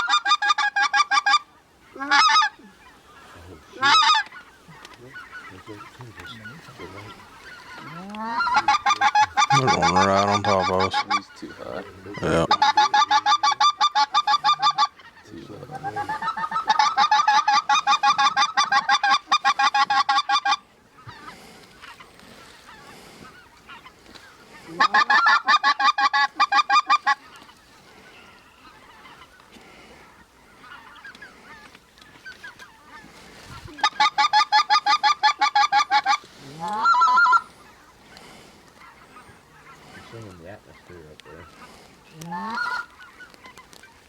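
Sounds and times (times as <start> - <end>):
goose call clucks and honks: 0.0 - 44.0
short rising goose call: 6.3 - 11.3, 33.7 - 40.2.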